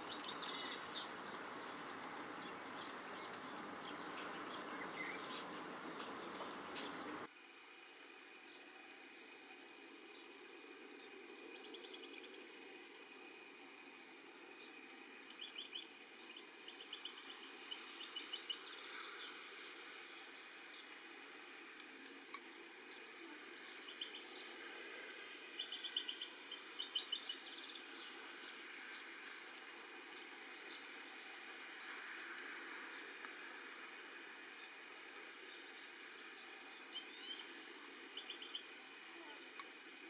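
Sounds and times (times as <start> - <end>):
young birds chirping: 0.0 - 1.1, 2.3 - 7.2
rain hissing: 0.0 - 40.0.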